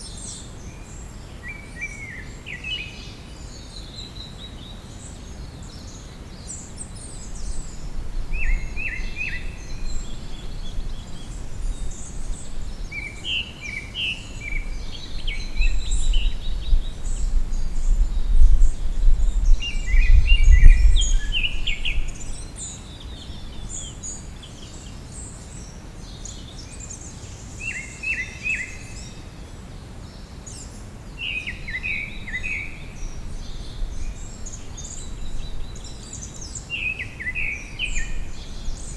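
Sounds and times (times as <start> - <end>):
songbirds singing and calling: 0.0 - 38.9.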